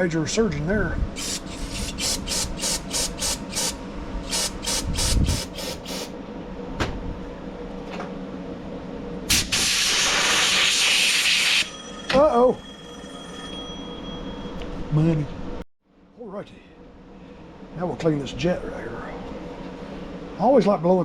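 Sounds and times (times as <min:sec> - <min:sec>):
air nozzle hissing bursts: 0:01.2 - 0:06.1, 0:09.3 - 0:11.6.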